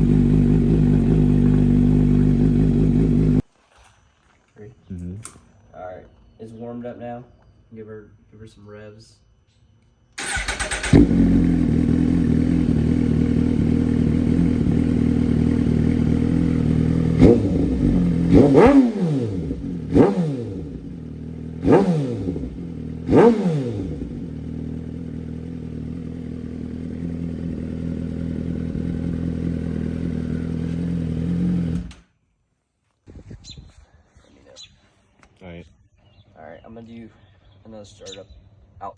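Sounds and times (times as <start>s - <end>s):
motorcycle engine idling: 0.0s - 3.4s, 10.2s - 32.0s
engine throttle blips: 10.2s - 32.0s.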